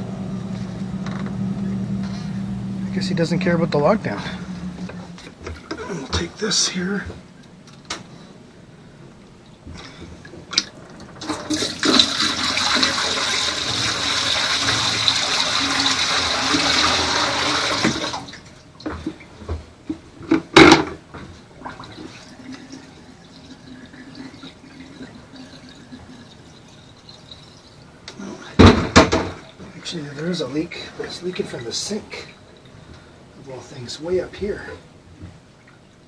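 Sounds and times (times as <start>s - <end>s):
water rushing into sink drain: 10.6s - 18.5s, 21.6s - 29.6s.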